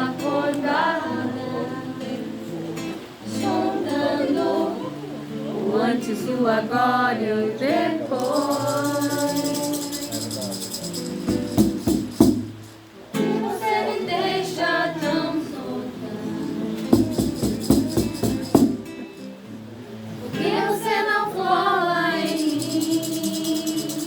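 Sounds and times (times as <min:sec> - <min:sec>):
person singing: 0:00.0 - 0:11.0, 0:20.4 - 0:24.0
strummed strings: 0:16.3 - 0:20.7.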